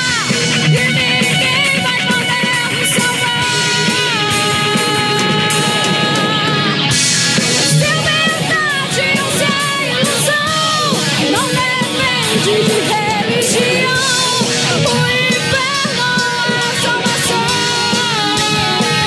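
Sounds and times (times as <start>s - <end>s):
rock song with singer: 0.0s - 19.0s.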